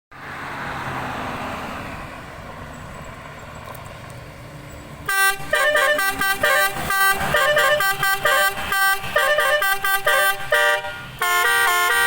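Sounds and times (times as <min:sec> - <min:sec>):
passing vehicle hiss and rumble: 0:00.1 - 0:12.0
bus musical horn blasting: 0:05.0 - 0:12.0.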